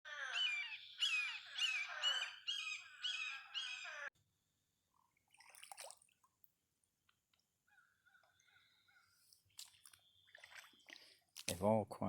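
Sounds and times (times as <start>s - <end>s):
toads calling: 0.1s - 4.1s.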